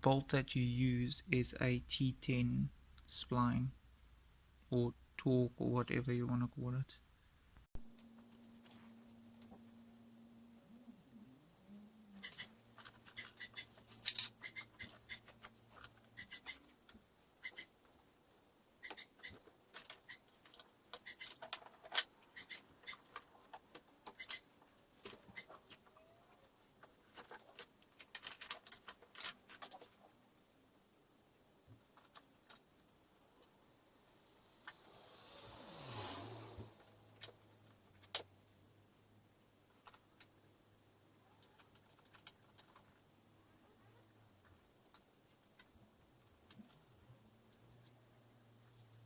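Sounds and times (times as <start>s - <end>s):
faint low hum: 0.0s - 19.2s
small plastic parts clicking: 12.2s - 18.0s, 18.8s - 30.0s, 41.4s - 43.0s.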